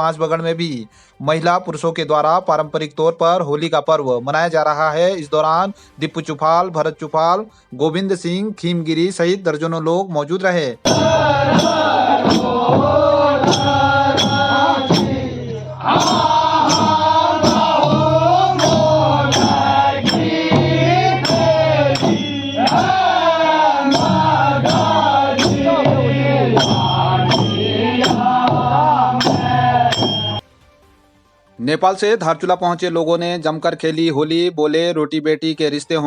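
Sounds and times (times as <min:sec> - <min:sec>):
group singing folk song: 0:10.9 - 0:30.4
sharp percussion strokes: 0:10.9 - 0:30.4.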